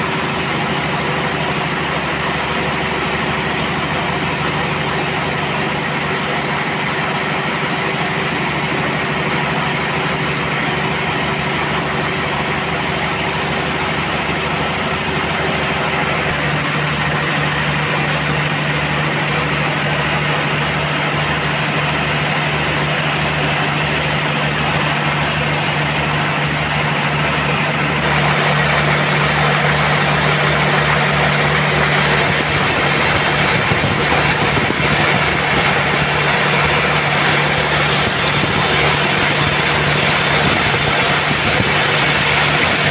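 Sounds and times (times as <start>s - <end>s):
sawmill machinery droning: 0.0s - 42.9s.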